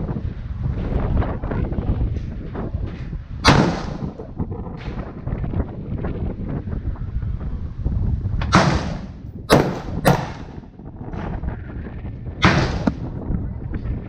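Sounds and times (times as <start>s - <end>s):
steady low rumble: 0.0s - 14.0s
rifle shots: 3.4s - 4.1s, 8.5s - 10.6s, 12.4s - 13.0s.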